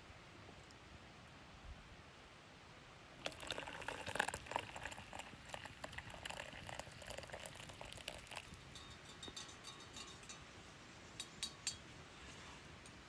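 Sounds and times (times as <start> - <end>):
water bubbling in a pot: 3.2 - 10.4.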